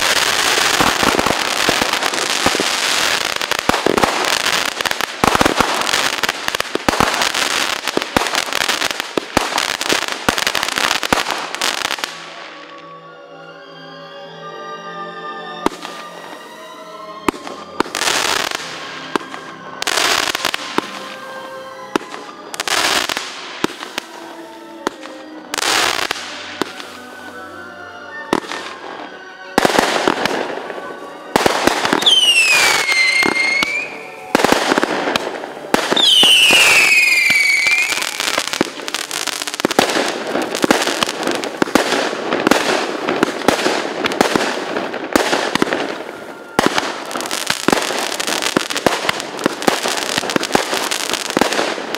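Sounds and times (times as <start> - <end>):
firework bangs: 0.0 - 12.3, 31.3 - 51.9
crackling firework bursts: 0.0 - 12.6, 29.6 - 51.9
falling whistling tones: 31.9 - 34.4, 36.0 - 38.2.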